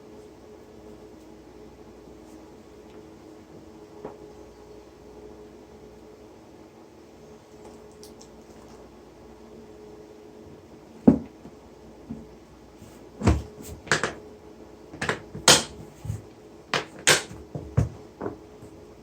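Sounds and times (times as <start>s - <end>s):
faint steady hum: 0.0s - 19.0s
objects knocking and clattering: 11.0s - 11.4s, 13.2s - 14.2s, 15.0s - 18.4s.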